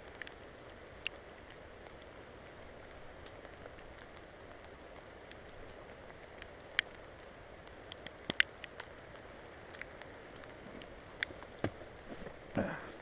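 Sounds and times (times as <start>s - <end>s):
faint steady hiss: 0.0s - 13.0s
light clicks and clinks: 3.2s - 3.7s, 5.5s - 5.9s.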